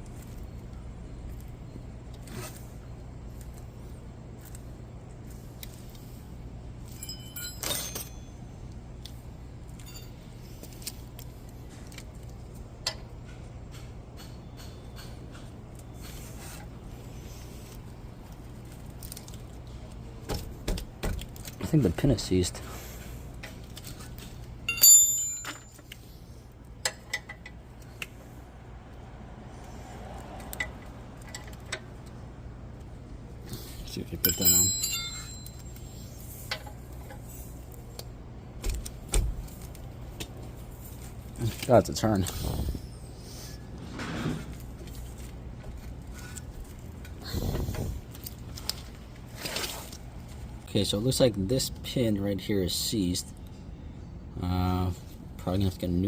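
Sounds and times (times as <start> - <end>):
low steady hum: 0.0 - 56.0
metal tools clinking on metal: 6.8 - 8.5, 9.7 - 11.0, 23.4 - 26.2, 33.8 - 37.3
metal tools clinking and scraping: 6.8 - 8.8, 9.7 - 17.8, 21.4 - 28.0, 33.5 - 37.6.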